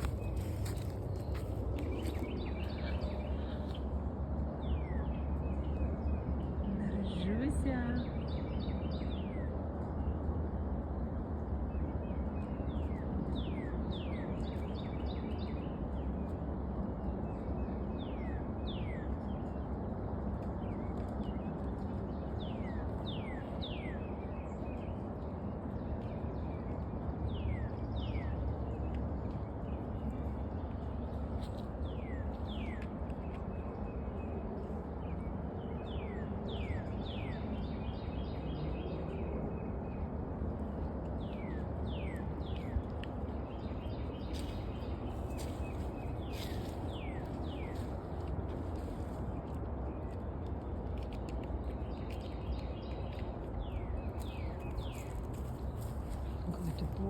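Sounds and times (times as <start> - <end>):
low outdoor rumble: 0.0 - 57.0
small birds calling: 41.0 - 48.2.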